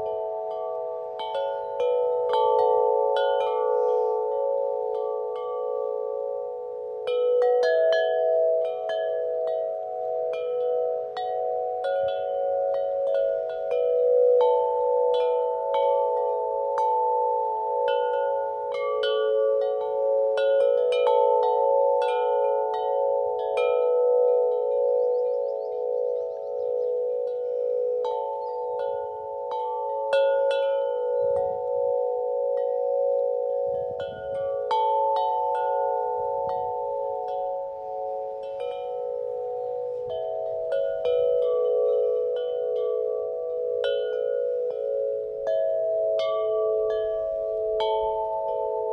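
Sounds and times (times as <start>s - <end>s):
wind chimes ringing: 0.0s - 48.9s.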